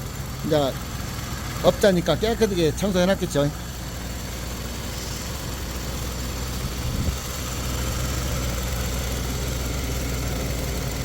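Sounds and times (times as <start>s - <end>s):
car engine idling: 0.0s - 11.0s
engine bump: 0.0s - 11.0s.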